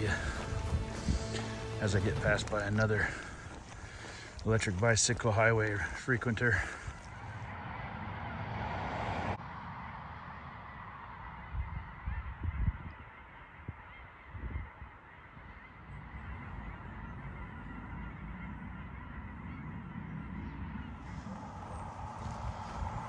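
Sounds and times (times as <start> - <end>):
low thuds: 0.0 - 4.5
steady outdoor hiss: 0.0 - 5.8, 16.0 - 23.0
faint honking bird calls: 0.0 - 8.4, 11.5 - 23.0.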